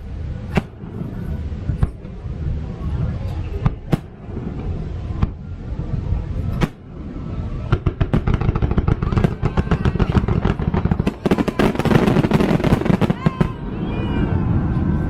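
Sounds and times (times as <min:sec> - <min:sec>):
low rumble: 0:00.0 - 0:11.6
firework bangs: 0:00.0 - 0:15.0
fireworks crackling: 0:00.0 - 0:15.0.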